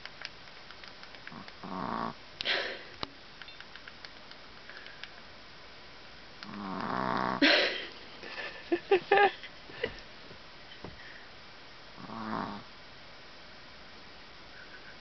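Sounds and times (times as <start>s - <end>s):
puppy snoring: 1.4s - 2.2s, 6.4s - 7.4s, 12.0s - 12.7s.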